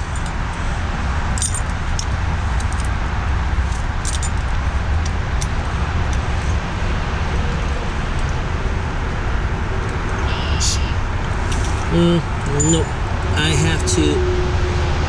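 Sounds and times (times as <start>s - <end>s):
metal parts clicking: 1.4s - 2.9s, 3.7s - 6.2s.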